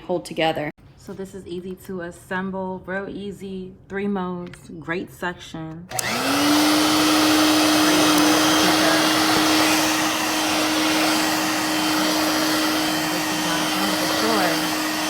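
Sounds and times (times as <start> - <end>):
vacuum cleaner running: 5.9 - 15.0.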